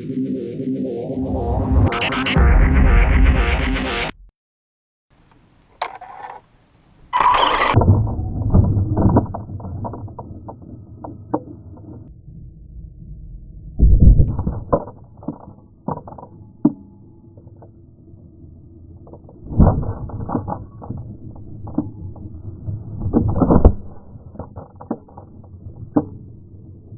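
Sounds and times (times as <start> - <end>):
toy car clattering and knocking: 5.7 - 6.5.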